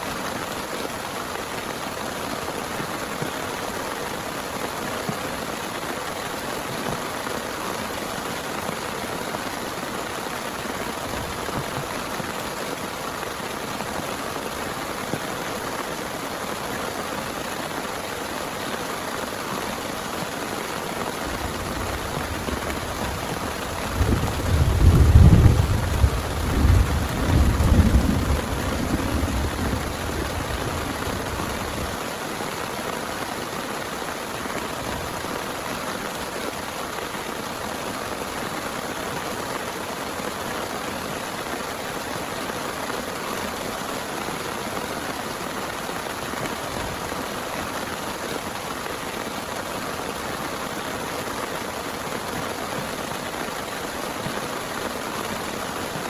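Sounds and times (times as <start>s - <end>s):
heavy rain: 0.0s - 56.0s
thunder rumbling: 21.2s - 32.0s.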